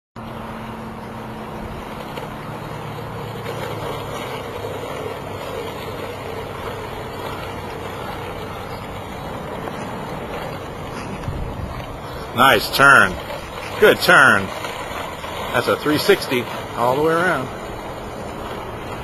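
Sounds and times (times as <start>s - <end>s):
skateboard wheels rolling on pavement: 0.2s - 19.0s.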